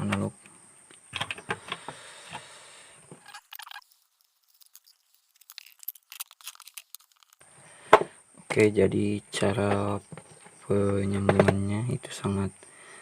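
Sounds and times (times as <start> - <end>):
small parts clicking and rustling: 3.1 - 7.4.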